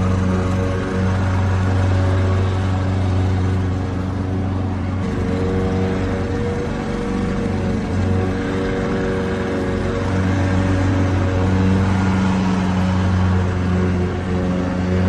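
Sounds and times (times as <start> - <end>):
lawn mower engine running: 0.0 - 15.0.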